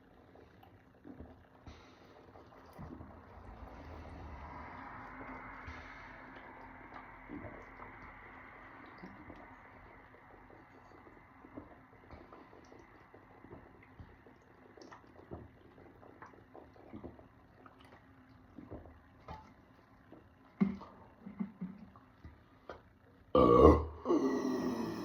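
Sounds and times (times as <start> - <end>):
person swallowing soda: 23.4 - 25.0.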